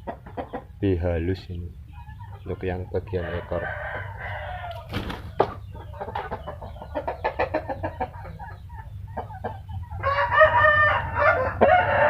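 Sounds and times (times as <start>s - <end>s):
chickens clucking: 0.0s - 12.0s
drawn-out chicken call: 3.0s - 12.0s.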